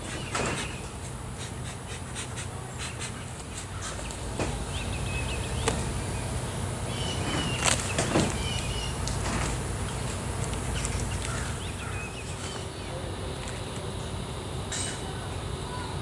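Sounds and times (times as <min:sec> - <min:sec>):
birds chirping: 0:00.0 - 0:16.0
steady low hum: 0:00.0 - 0:16.0.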